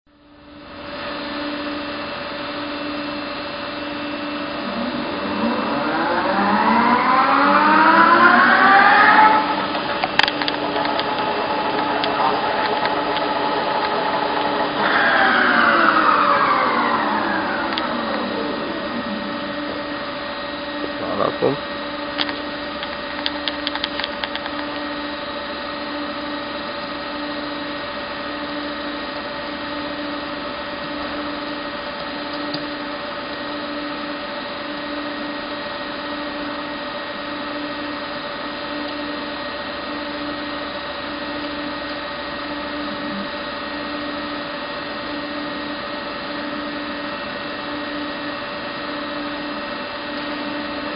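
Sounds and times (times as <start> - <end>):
boring mill mechanical hum: 0.1 - 50.9
machine whining tones: 0.2 - 50.9
low pulsing tone: 2.8 - 23.5, 42.6 - 44.2.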